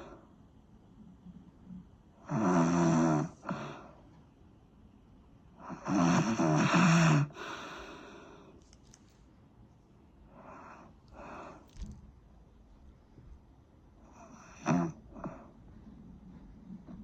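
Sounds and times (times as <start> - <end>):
loud snoring: 2.2 - 3.6, 5.7 - 7.4, 14.2 - 15.3
faint breath: 6.7 - 8.7, 10.3 - 11.9.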